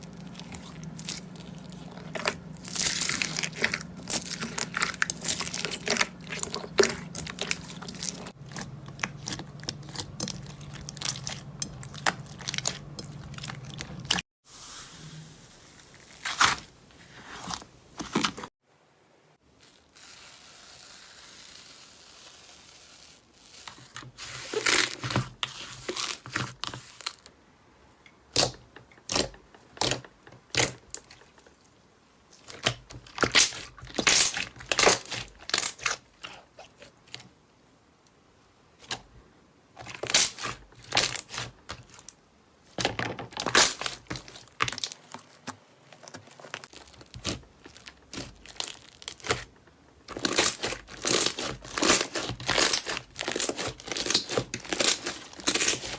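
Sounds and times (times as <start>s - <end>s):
slime crackling and popping: 0.1s - 14.2s, 32.4s - 36.0s, 43.4s - 49.5s, 50.1s - 55.9s
faint hiss: 14.5s - 16.2s.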